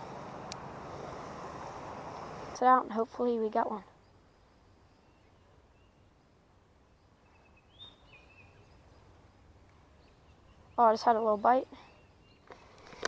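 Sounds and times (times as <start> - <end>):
faint high bird chirps: 3.8 - 9.2, 9.9 - 12.7.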